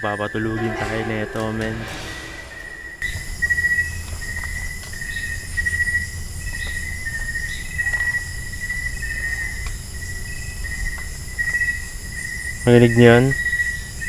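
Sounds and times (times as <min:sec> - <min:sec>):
low rumble: 0:00.4 - 0:03.8
insects chirring: 0:01.9 - 0:14.0.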